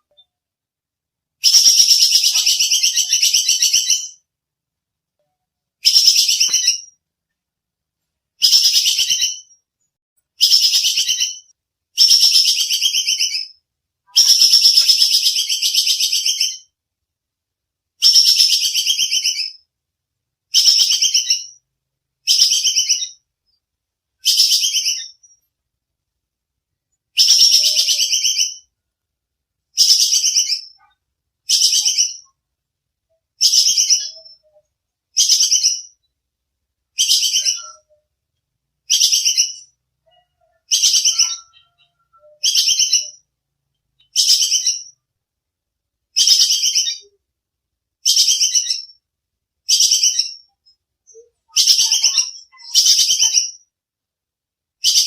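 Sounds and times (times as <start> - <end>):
squirrel alarm chatter: 1.4 - 4.2, 14.1 - 16.7, 27.2 - 28.7, 38.9 - 43.3, 51.1 - 53.6.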